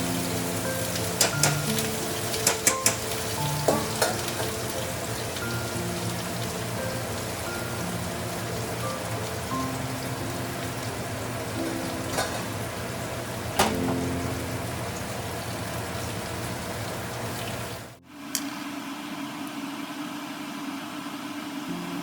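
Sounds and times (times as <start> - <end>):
soft background music: 0.0 - 16.0
food sizzling in a pan: 0.0 - 18.0.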